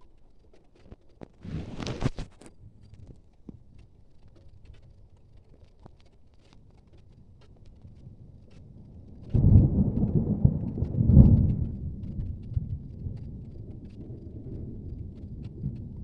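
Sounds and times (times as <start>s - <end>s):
thunder crack and rumble: 7.7s - 16.0s.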